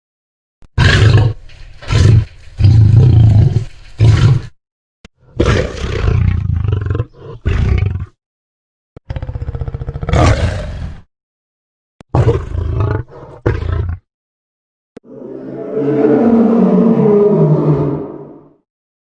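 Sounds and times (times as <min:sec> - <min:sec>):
lion roaring: 0:00.8 - 0:04.5, 0:05.3 - 0:08.1, 0:09.1 - 0:11.0, 0:15.0 - 0:18.6.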